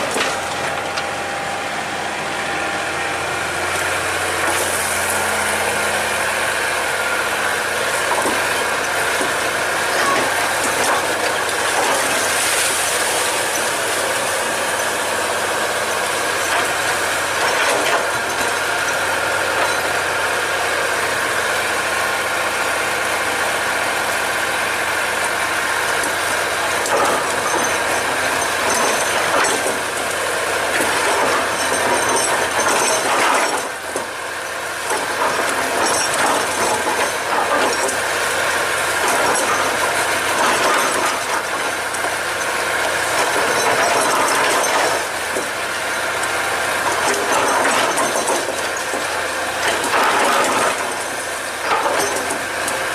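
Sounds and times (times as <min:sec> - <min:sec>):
excavator diesel engine: 0:00.0 - 0:52.9.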